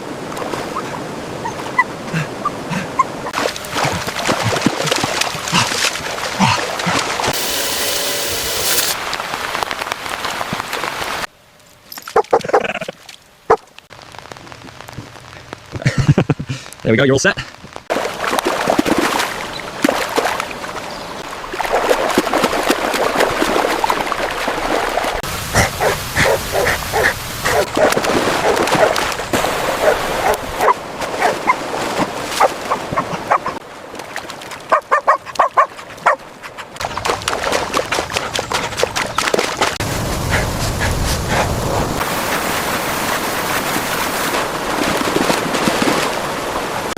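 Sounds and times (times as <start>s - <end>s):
steady rushing background noise: 7.4s - 10.1s.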